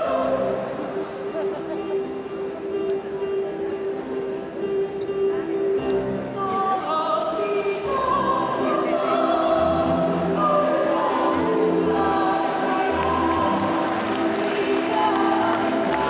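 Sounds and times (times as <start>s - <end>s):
choir singing: 0.0s - 1.5s, 6.8s - 16.0s.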